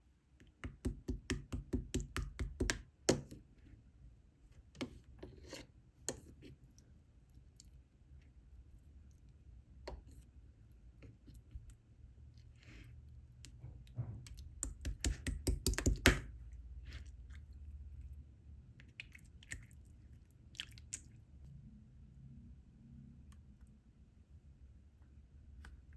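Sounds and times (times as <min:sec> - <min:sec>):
spoon stirring and scraping in cup: 0:04.8 - 0:06.7.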